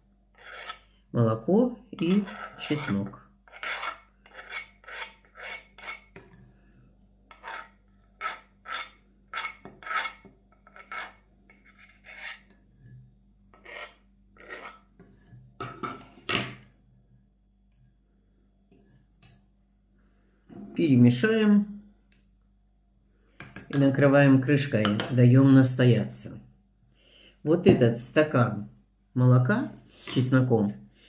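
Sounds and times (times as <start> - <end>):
knife scraping cutting board: 0.4 - 0.9, 2.0 - 6.3, 7.3 - 12.6, 13.6 - 16.4.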